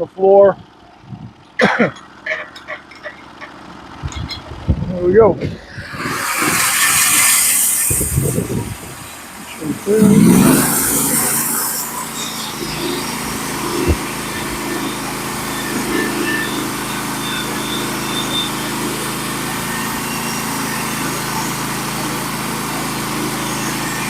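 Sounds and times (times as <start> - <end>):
sawmill engine running: 5.5 - 24.0.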